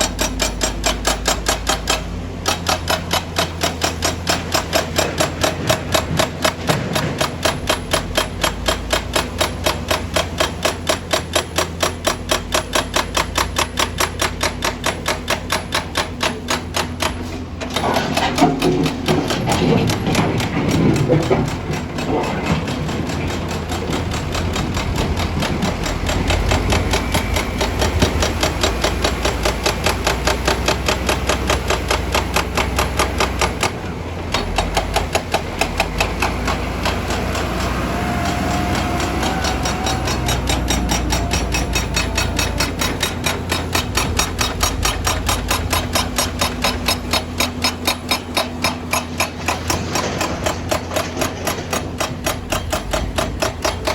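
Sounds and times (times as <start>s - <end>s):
diesel engine humming: 0.0s - 53.9s
hydraulic breaker hammering rock: 0.0s - 53.9s.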